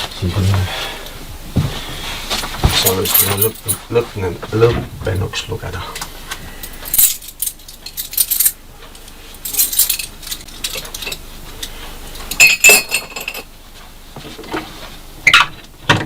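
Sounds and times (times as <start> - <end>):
keys jingling: 2.7 - 3.9, 6.6 - 8.6, 9.4 - 11.2
sharp metallic clinks: 2.8 - 3.8, 6.6 - 8.6.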